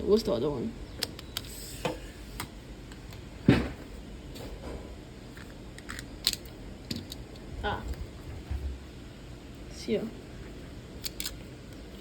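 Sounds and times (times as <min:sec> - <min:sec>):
small parts clicking and tapping: 0:05.3 - 0:07.5, 0:11.0 - 0:11.8
screwdriver being handled: 0:11.0 - 0:11.4.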